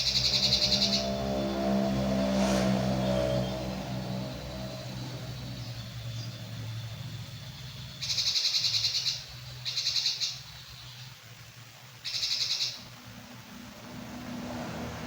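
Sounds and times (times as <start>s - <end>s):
bird calling with fast trills: 0.0s - 1.8s, 3.0s - 11.2s, 12.0s - 13.0s.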